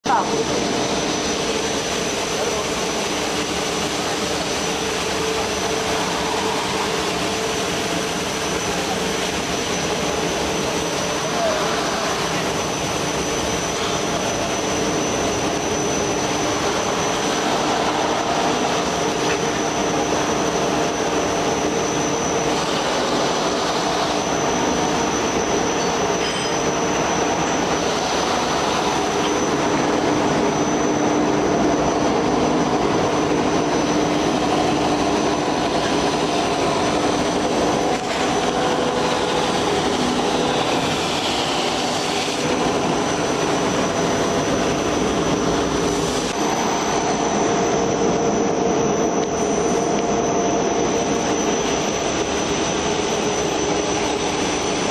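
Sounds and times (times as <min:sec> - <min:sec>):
sanding machine whirring: 0:32.4 - 0:48.2.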